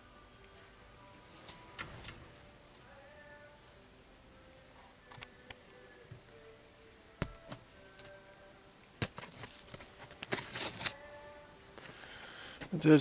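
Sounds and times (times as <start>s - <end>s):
crackling rustling handling noise: 9.0s - 11.0s.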